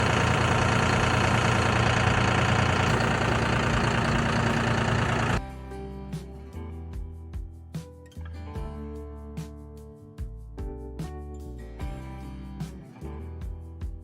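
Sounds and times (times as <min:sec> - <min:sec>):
sawmill engine running: 0:00.0 - 0:05.4
background music with a beat: 0:05.4 - 0:14.0.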